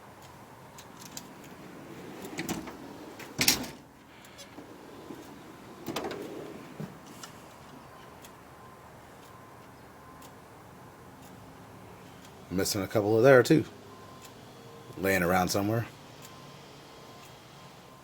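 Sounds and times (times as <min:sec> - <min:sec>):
drawer shutting clunk: 0:01.0 - 0:07.2
tool box drawer sliding: 0:01.0 - 0:07.3.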